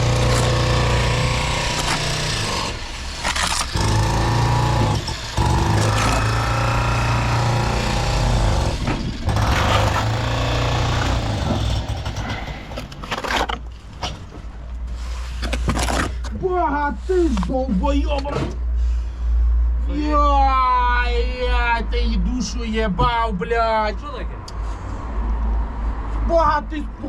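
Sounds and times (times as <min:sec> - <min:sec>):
jackhammer running: 0:00.0 - 0:13.2.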